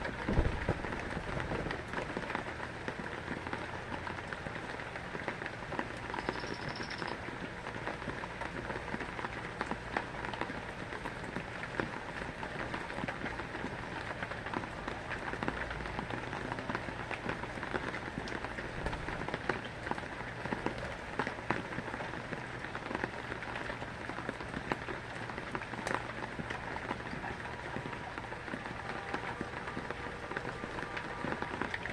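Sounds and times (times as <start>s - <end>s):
rain pattering on a surface: 0.0s - 31.9s.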